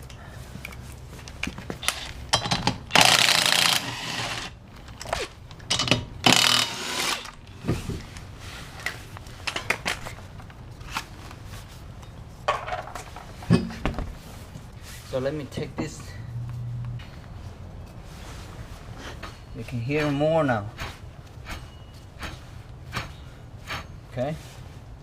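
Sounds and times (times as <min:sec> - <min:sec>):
power tool bursts: 0:02.9 - 0:04.6, 0:06.2 - 0:07.4.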